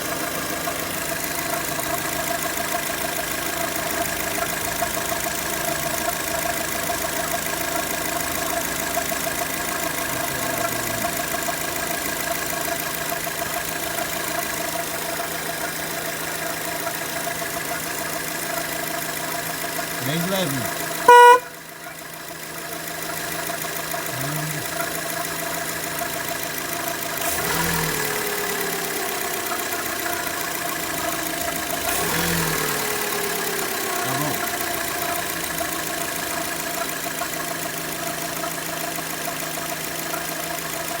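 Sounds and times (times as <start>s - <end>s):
car engine with high whine: 0.0s - 41.0s
short loud beep: 21.1s - 21.5s.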